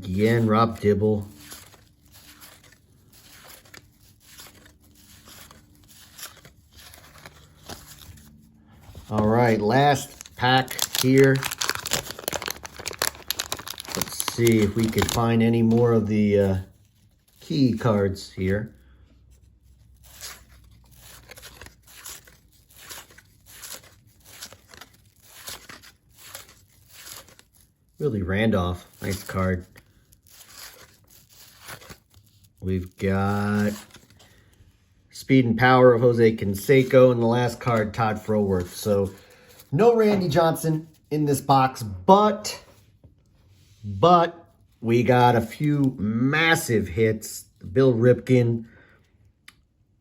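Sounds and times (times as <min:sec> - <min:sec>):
cardboard cards scraping: 0:00.0 - 0:18.7, 0:19.3 - 0:34.6, 0:36.2 - 0:41.1
cards sliding papery swish: 0:00.1 - 0:09.7, 0:29.0 - 0:32.3.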